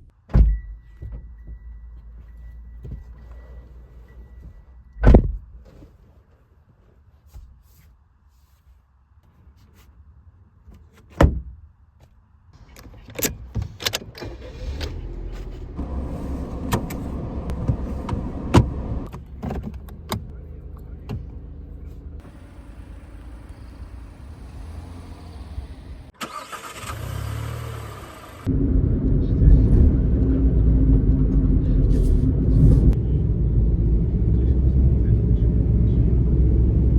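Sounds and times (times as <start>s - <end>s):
car engine starting and running: 12.7s - 36.9s
car doors shutting: 13.2s - 20.3s, 22.2s - 28.5s.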